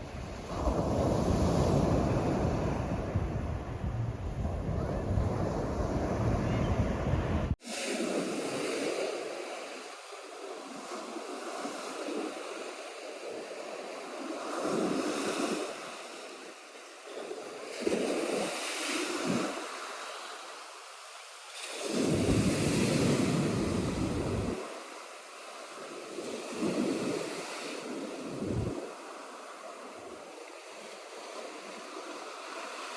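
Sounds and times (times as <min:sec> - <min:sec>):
wind buffeting microphone: 0:00.0 - 0:07.6, 0:21.9 - 0:24.7, 0:28.1 - 0:29.0
surf breaking on shore: 0:00.0 - 0:20.8, 0:21.4 - 0:32.9.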